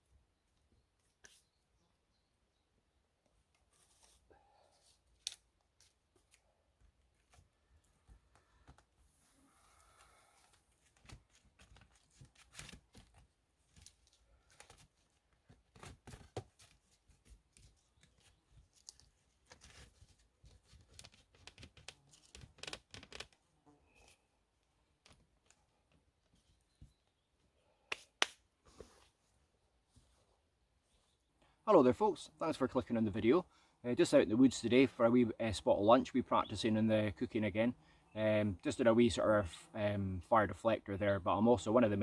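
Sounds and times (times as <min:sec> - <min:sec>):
rustling and crackling: 0:09.8 - 0:24.2.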